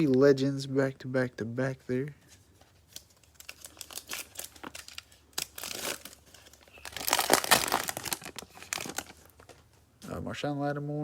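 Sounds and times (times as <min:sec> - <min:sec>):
cellophane wrapper crinkling: 0:02.6 - 0:09.7.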